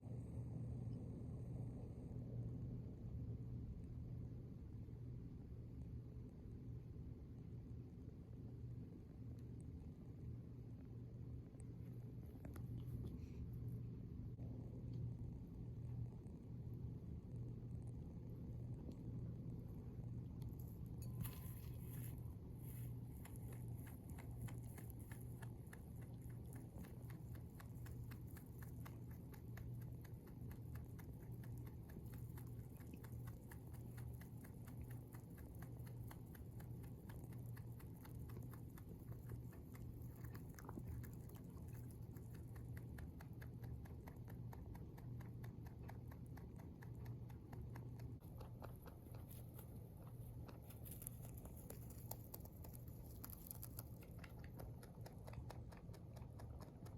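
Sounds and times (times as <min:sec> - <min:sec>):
steady low hum: 0:00.0 - 0:56.9
rabbit chewing hay: 0:03.4 - 0:56.9.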